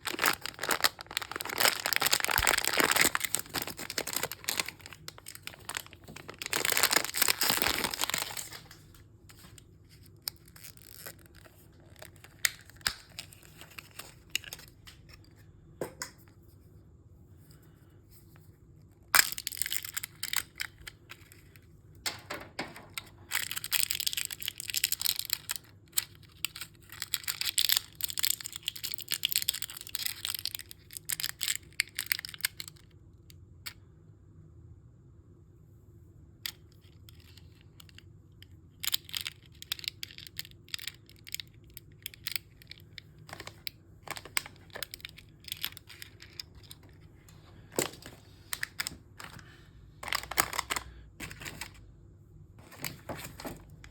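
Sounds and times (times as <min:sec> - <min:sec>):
wrapper crinkling and tearing: 0:00.0 - 0:15.0, 0:19.2 - 0:21.5, 0:22.4 - 0:32.8, 0:38.8 - 0:47.0, 0:47.8 - 0:51.8.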